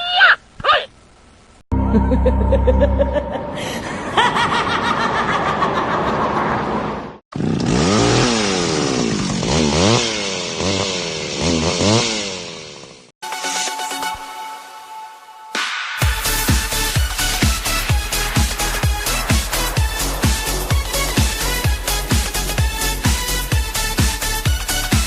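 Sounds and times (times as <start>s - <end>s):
evil cackling laugh: 1.7s - 6.8s
chainsaw revving: 7.3s - 13.1s.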